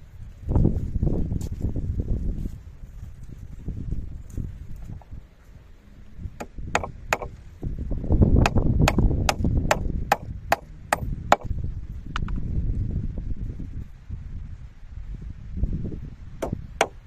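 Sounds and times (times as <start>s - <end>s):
wind buffeting microphone: 0.0s - 17.0s
hand tool chopping blows: 6.4s - 7.3s, 8.4s - 11.5s, 16.4s - 17.0s.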